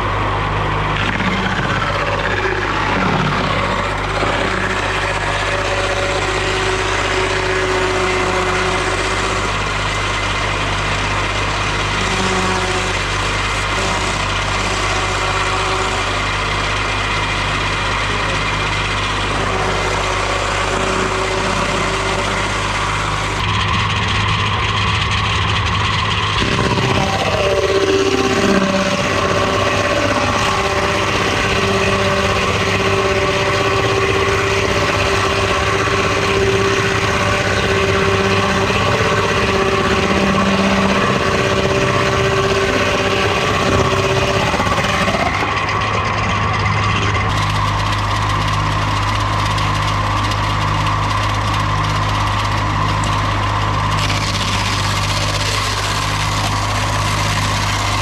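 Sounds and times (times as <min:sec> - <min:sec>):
lumber-milling machinery running: 0:00.0 - 0:58.0.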